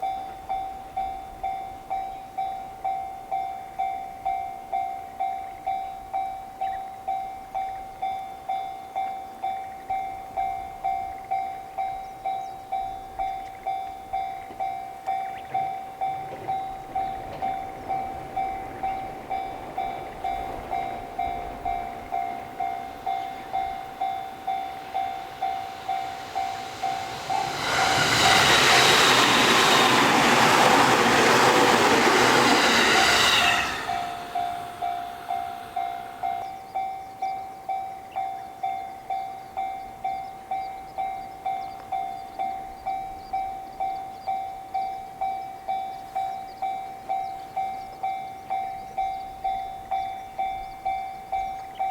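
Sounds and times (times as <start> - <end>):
level crossing warning bell: 0.0 - 51.9
train rushing past: 16.0 - 36.6.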